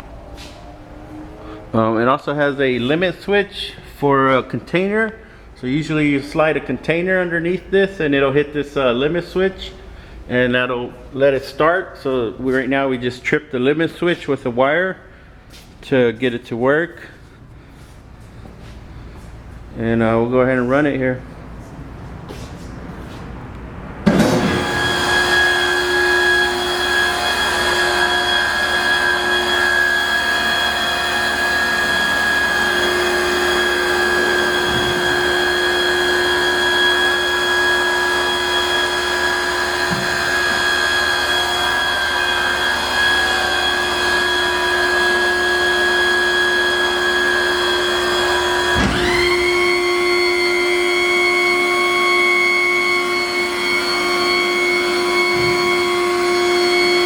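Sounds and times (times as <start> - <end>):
hydraulic pump motor whining: 24.0 - 57.0.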